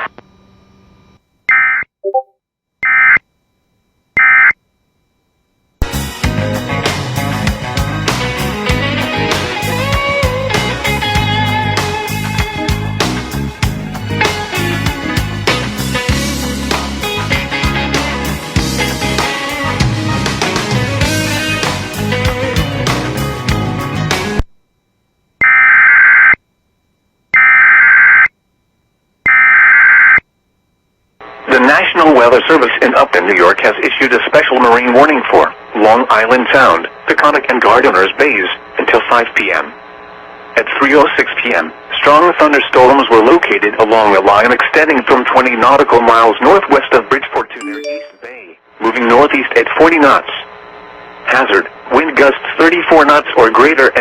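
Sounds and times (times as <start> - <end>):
guitar music: 5.8 - 24.4
low beep: 47.6 - 48.4
shrill digital data tones: 47.6 - 48.5.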